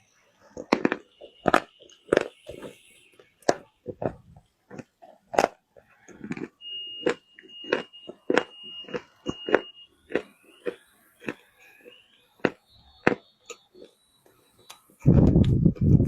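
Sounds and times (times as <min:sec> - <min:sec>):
chewing wet clay crunches: 0:00.4 - 0:16.0
faint high-pitched tone: 0:06.6 - 0:15.7.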